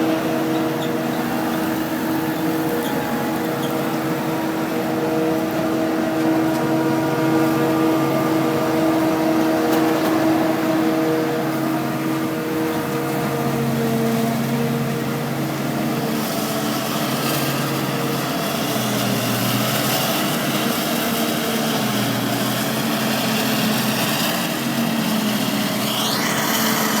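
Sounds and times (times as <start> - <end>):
tractor engine running: 0.0 - 27.0
short rising whine: 25.6 - 27.0.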